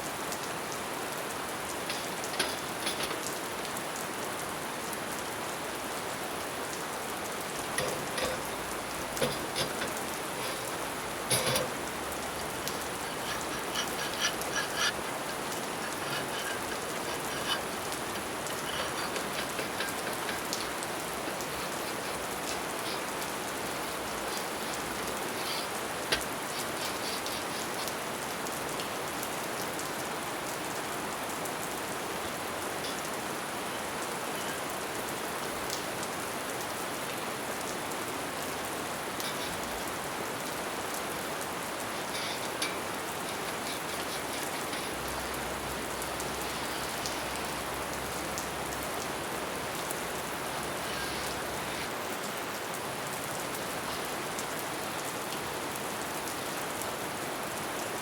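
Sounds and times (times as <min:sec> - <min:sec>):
steady rain falling: 0:00.0 - 0:58.0
light clicks and taps: 0:01.9 - 0:03.4, 0:07.6 - 0:28.0, 0:41.9 - 0:45.3.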